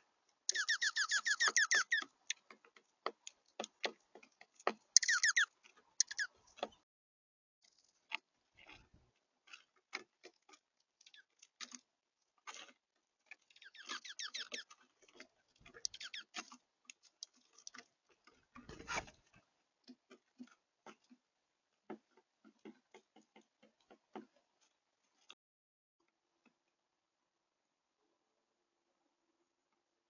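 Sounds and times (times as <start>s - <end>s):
birds pecking seeds: 0.3s - 6.8s, 7.7s - 25.4s
bird chirps: 0.5s - 2.1s, 5.0s - 6.3s, 13.6s - 14.7s, 15.8s - 16.4s.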